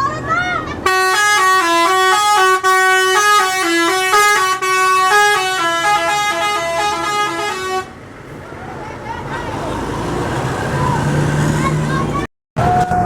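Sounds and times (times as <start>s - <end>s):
bus musical horn tune: 0.8s - 8.0s.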